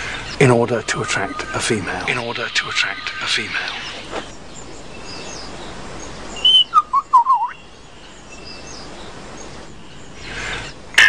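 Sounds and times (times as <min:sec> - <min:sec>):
faint steady hiss: 0:00.0 - 0:11.0
lyrebird whistled calls: 0:06.4 - 0:07.6.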